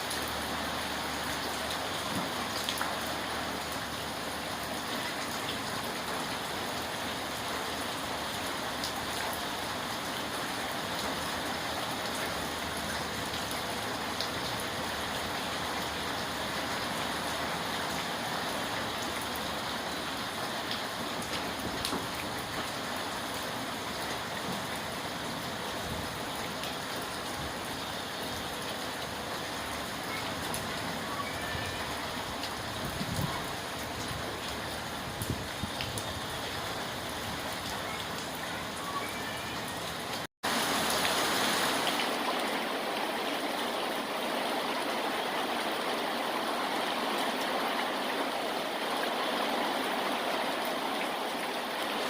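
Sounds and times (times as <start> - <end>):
steady rain falling: 0.0 - 52.0.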